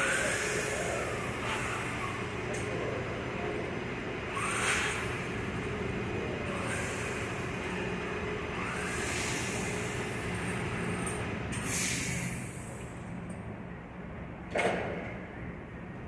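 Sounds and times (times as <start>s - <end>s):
short air hisses: 9.0s - 9.8s, 11.6s - 12.8s.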